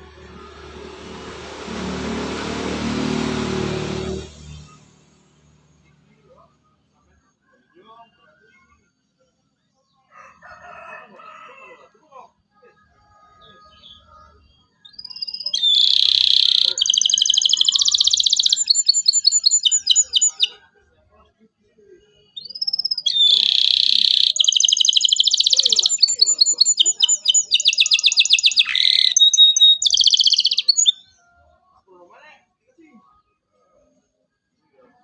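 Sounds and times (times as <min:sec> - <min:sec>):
canary singing trills and chirps: 0:13.5 - 0:20.6, 0:22.3 - 0:31.3.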